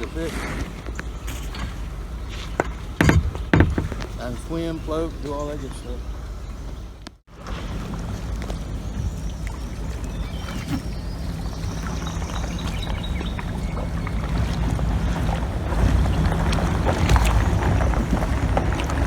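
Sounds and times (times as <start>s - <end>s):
water lapping and splashing: 0.0s - 19.0s
wind rumble on microphone: 0.0s - 19.0s
small knocks: 2.4s - 4.2s.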